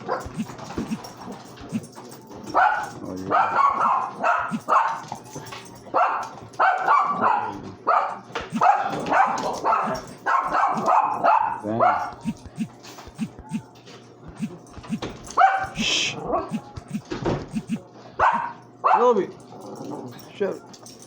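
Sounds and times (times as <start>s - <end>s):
dog barking: 0.0s - 13.6s, 14.3s - 19.2s.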